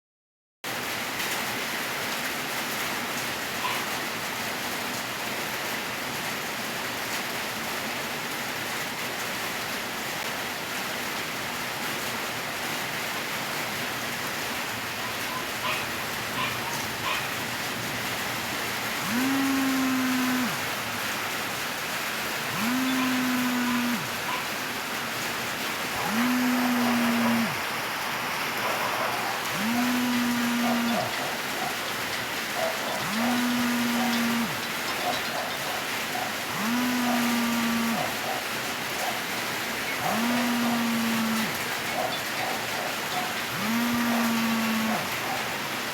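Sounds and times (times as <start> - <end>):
phone vibration buzzing: 18.9 - 20.8, 22.4 - 24.5, 25.9 - 27.7, 29.4 - 31.4, 32.7 - 35.7, 36.4 - 38.4, 40.0 - 45.3.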